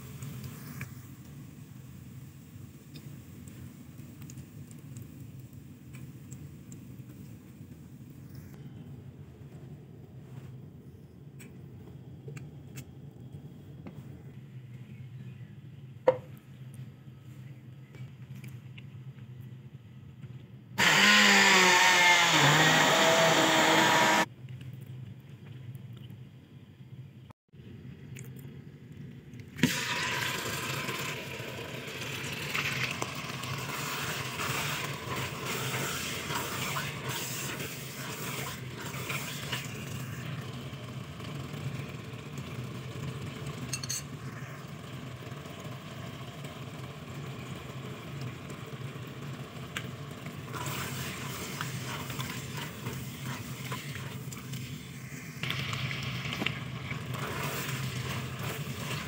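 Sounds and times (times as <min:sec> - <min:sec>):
steady low hum: 0:04.7 - 0:20.8
food sizzling in oil: 0:29.7 - 0:40.4, 0:50.5 - 0:59.0.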